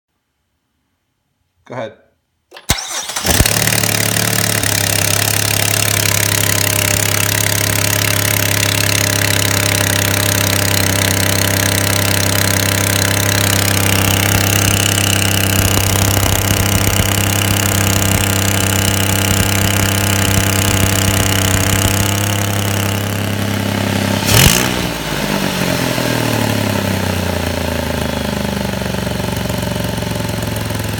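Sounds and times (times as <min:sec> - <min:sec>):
car engine fast idle: 0:02.7 - 0:23.8.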